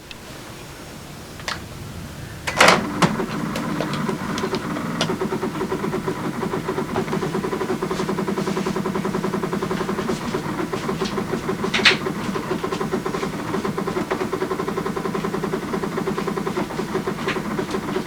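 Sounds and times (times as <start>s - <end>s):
air conditioner rattling: 0.0s - 18.0s.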